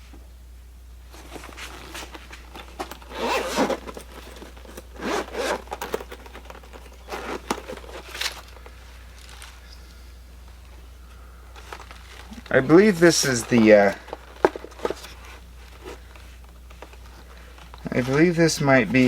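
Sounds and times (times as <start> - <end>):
rustling: 1.0 - 19.0
zipper pulled: 1.5 - 8.5.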